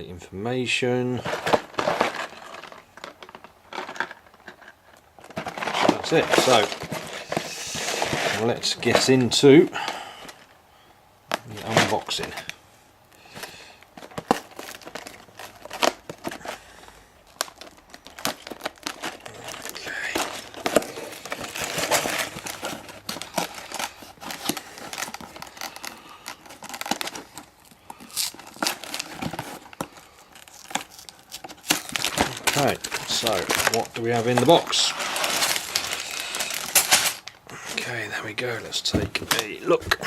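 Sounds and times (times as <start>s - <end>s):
rustling of plastic bags: 1.1s - 10.6s, 11.4s - 40.0s
cardboard box tabs tearing: 17.3s - 29.8s, 30.4s - 37.3s.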